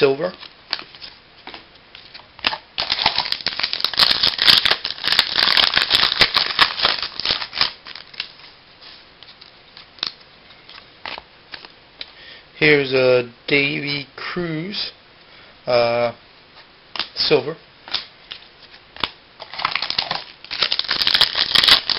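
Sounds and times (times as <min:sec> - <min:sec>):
cards flipped by hand: 0:07.2 - 0:12.1.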